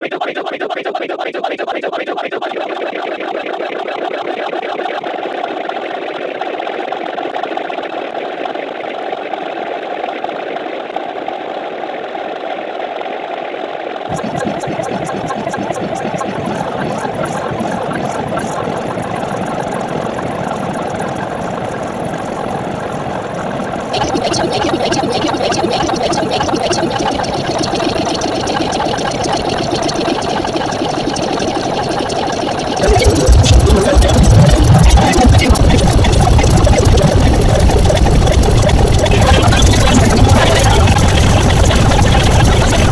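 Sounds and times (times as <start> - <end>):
fast regular pulsing: 14.1 - 42.9
rapid mechanical rattle: 14.1 - 42.9.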